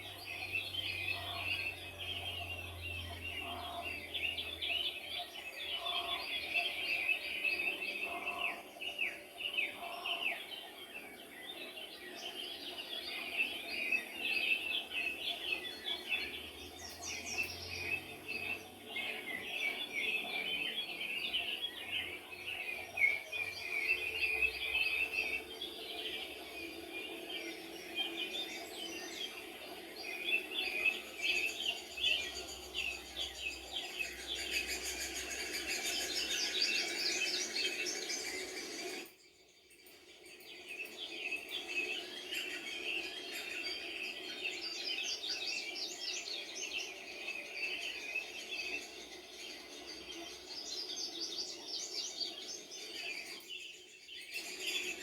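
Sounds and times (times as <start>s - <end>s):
songbirds chirping and singing: 0.0s - 55.0s.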